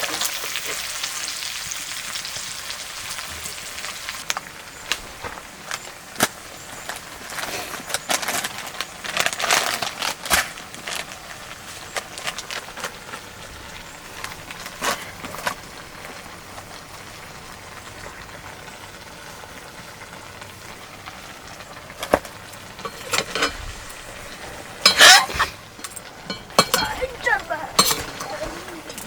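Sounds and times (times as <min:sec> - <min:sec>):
curry sizzling in a pot: 0:00.0 - 0:29.0
clattering and scraping: 0:21.7 - 0:29.0.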